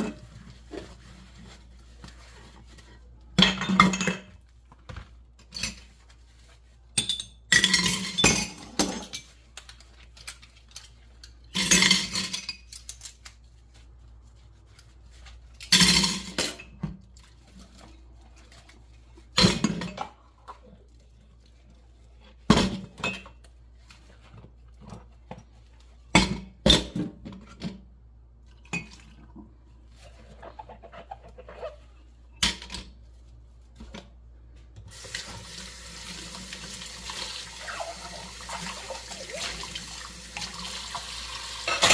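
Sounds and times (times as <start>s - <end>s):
dishes and cutlery clattering: 41.6s - 41.9s.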